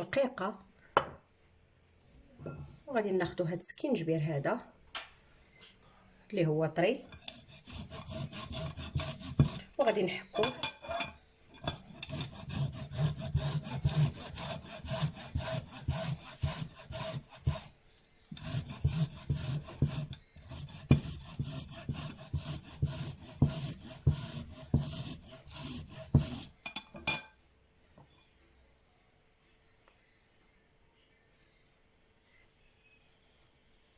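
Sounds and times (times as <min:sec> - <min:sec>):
ginger rasping on a grater: 0:07.1 - 0:09.8, 0:11.6 - 0:17.7, 0:18.3 - 0:26.5.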